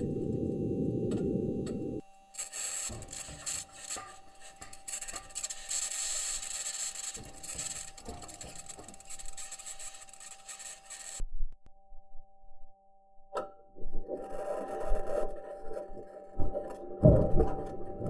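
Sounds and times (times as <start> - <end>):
high-pitched scratching: 2.4 - 11.2.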